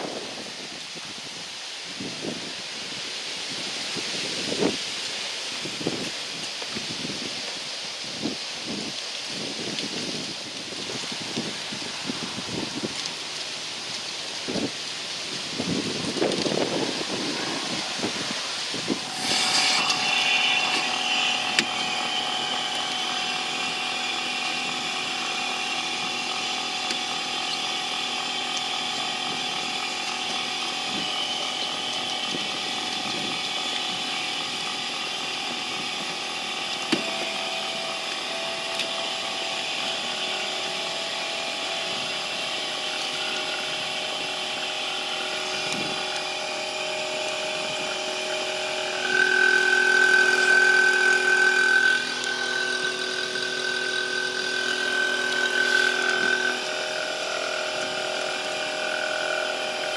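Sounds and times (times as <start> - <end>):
machine humming: 9.4 - 59.9
loud high steady tone: 15.4 - 59.9.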